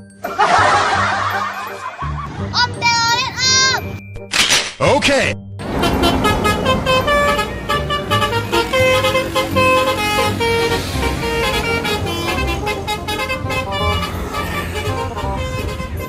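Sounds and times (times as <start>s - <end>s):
low engine rumble: 5.6s - 16.0s
multi-tone bus horn tune: 5.6s - 16.0s.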